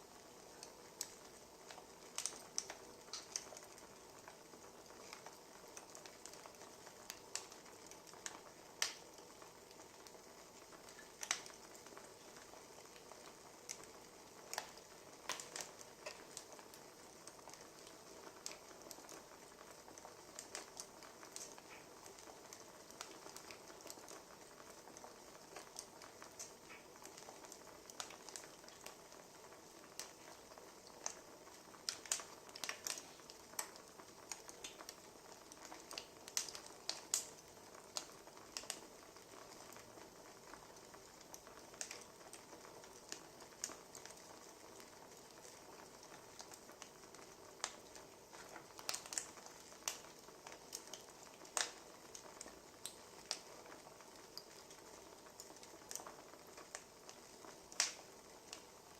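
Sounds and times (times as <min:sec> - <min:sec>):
wood fire crackling: 0:00.0 - 0:58.9.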